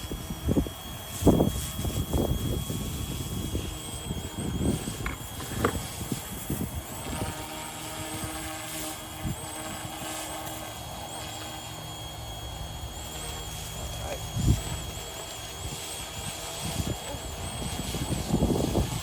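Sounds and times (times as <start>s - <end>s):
wind buffeting microphone: 0.0s - 10.2s, 15.6s - 19.0s
toy helicopter motor and rotor: 0.0s - 19.0s.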